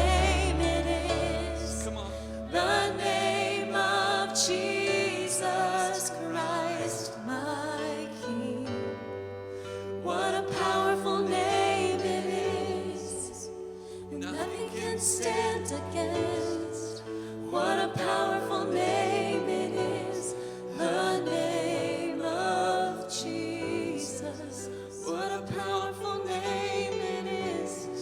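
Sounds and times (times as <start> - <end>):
held bass notes: 0.0 - 3.0
guitar: 0.0 - 5.6
piano: 0.0 - 28.0
vocalists singing with vibrato: 0.0 - 28.0.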